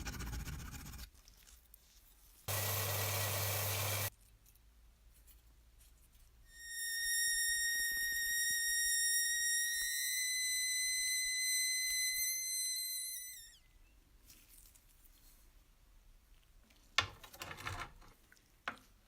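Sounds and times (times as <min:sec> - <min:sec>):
small electric motor whining: 0:02.5 - 0:04.1.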